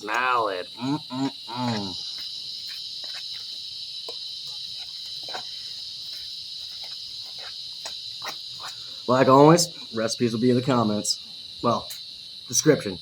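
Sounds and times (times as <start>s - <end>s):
high-pitched insect chorus: 0.0s - 13.0s.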